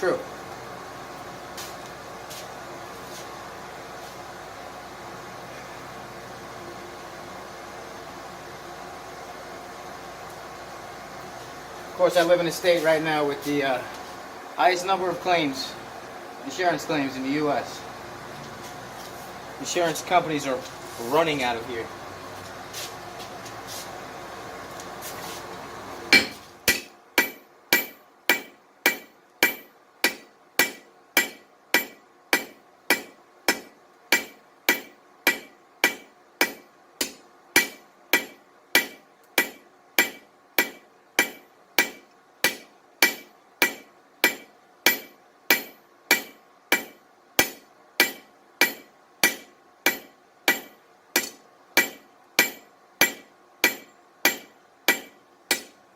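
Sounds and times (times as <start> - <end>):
hammer ringing on anvil: 26.1 - 55.7.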